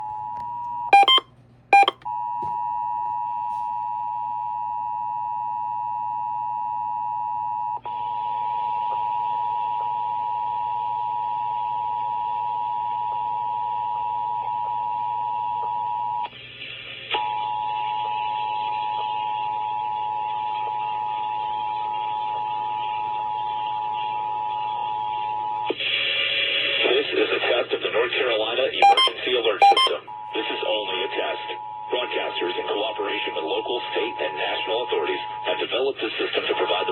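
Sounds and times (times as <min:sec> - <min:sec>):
short data bursts: 0:01.0 - 0:01.2, 0:01.8 - 0:02.0, 0:28.8 - 0:30.0
two-tone alert signal: 0:01.0 - 0:01.2, 0:01.8 - 0:02.0, 0:28.8 - 0:30.0.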